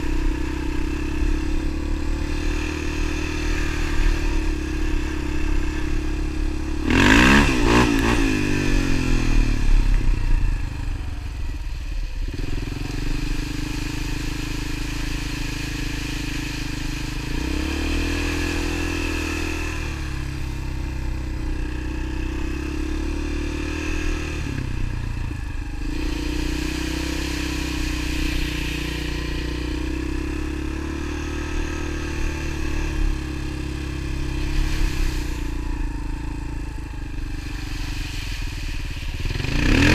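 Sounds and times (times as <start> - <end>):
vehicle engine revving: 0.0 - 39.9.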